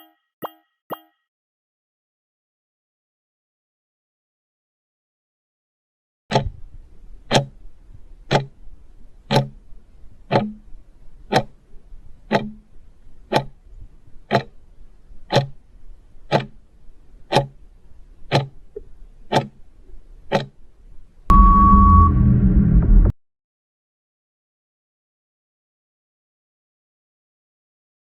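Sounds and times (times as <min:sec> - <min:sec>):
timer ticking: 0:00.0 - 0:01.2, 0:06.3 - 0:11.6, 0:12.2 - 0:19.7, 0:20.3 - 0:20.6.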